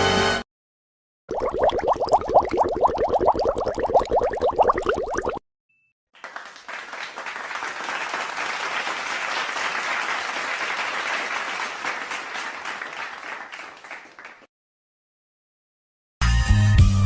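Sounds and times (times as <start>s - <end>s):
crowd applauding: 6.2s - 14.5s.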